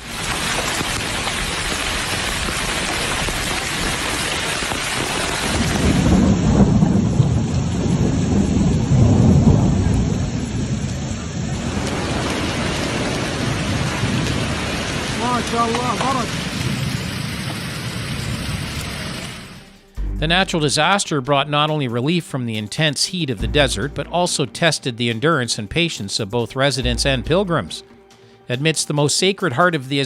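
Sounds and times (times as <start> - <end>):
heavy rain: 0.0 - 19.8
thunder rumbling: 0.0 - 20.9.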